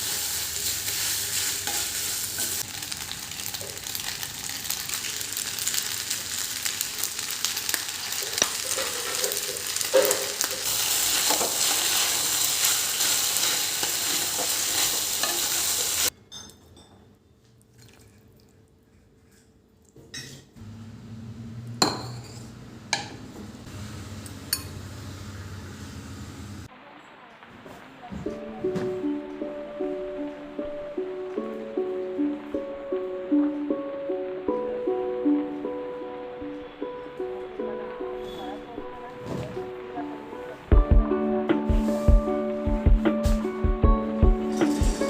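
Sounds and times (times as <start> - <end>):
food sizzling in a pan: 0.0 - 16.1, 23.6 - 40.7, 41.5 - 45.0.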